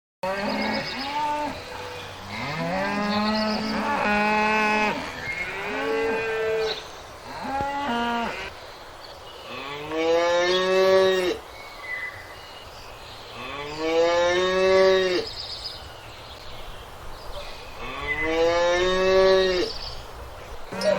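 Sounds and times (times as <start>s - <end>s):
cattle mooing: 2.3s - 6.7s.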